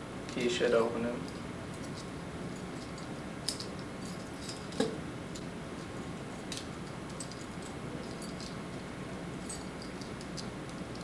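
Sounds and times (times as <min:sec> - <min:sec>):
metallic clicks of handcuffs: 0:02.8 - 0:05.5.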